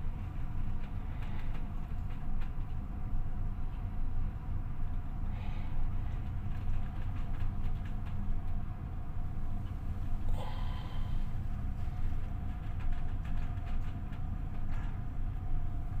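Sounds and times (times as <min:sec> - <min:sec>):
ship engine drone: 0:09.4 - 0:11.7.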